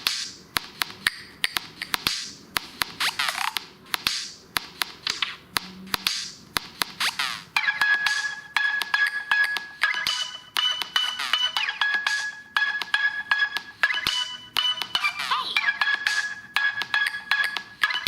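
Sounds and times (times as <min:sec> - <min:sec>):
electronic ringtone: 0:07.1 - 0:18.0.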